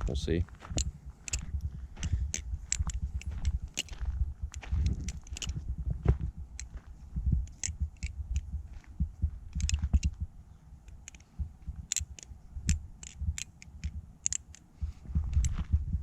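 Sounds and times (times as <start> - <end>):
butterfly knife metal clicks: 0.8 - 1.5, 2.3 - 5.5, 7.4 - 8.5, 9.5 - 10.1, 10.9 - 14.7.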